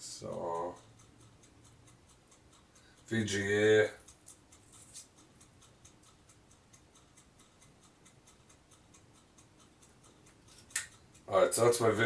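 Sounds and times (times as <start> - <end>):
faint even ticking: 0.0 - 12.0
small click: 10.3 - 11.0.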